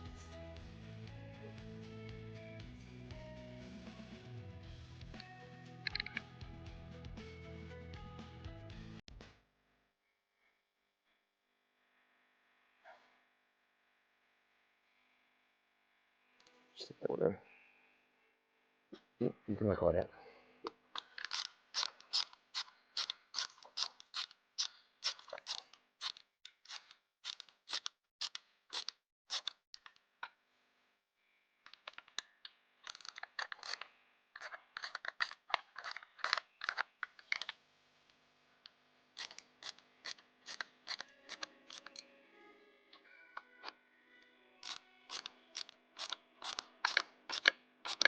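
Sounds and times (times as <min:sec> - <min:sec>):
ratchet wrench clicking: 0:39.2 - 0:42.0, 0:44.6 - 0:48.0.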